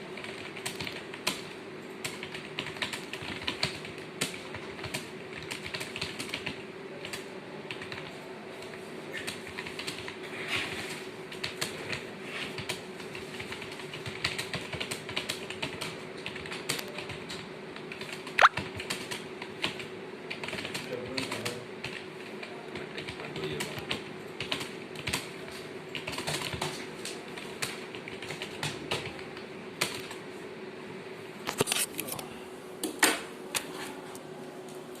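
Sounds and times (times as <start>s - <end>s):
keyboard key clicks: 18.4s - 18.7s.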